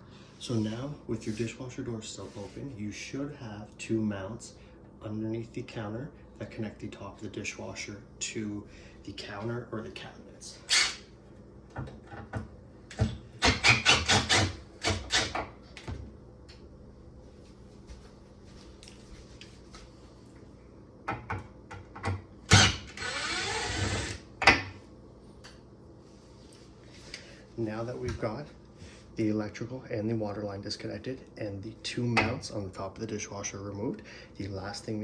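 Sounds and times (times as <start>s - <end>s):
tool whirr: 10.7s - 11.1s, 13.4s - 15.4s, 22.5s - 24.2s.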